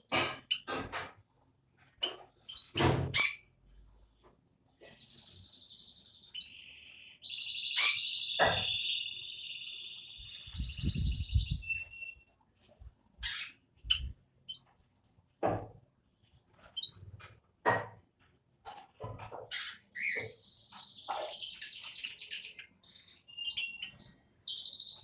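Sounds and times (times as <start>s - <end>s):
sparrow chirping trill: 2.4s - 3.5s, 4.8s - 12.2s, 19.5s - 25.0s.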